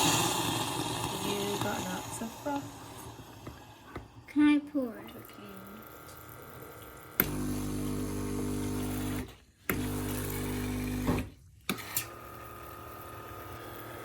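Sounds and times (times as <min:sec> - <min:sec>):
espresso machine pump buzzing: 0:00.0 - 0:04.2, 0:05.0 - 0:14.0.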